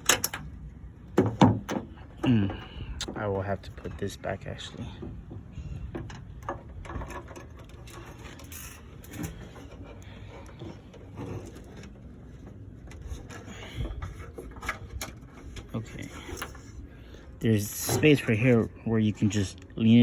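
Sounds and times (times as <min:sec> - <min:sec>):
small parts clicking and knocking: 0:00.0 - 0:00.5
low steady rumble: 0:00.0 - 0:20.0.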